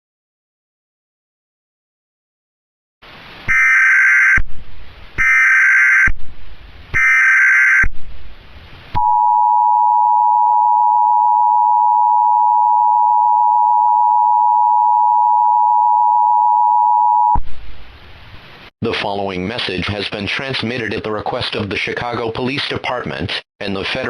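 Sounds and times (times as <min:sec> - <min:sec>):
steady two-tone alarm: 0:03.5 - 0:04.4, 0:05.2 - 0:06.1, 0:07.0 - 0:07.9.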